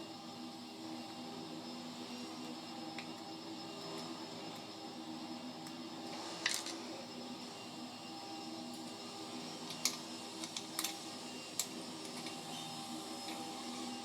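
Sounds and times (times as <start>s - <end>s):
steady background hum: 0.0s - 14.0s
small clicks of tools and parts: 3.0s - 3.2s, 6.4s - 6.8s, 9.6s - 11.0s, 11.6s - 12.5s.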